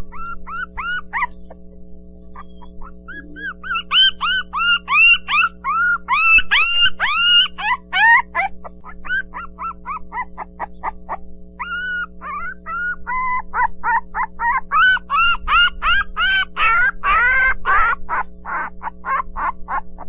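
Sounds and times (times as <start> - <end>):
puppies yipping and whining: 0.0 - 20.0.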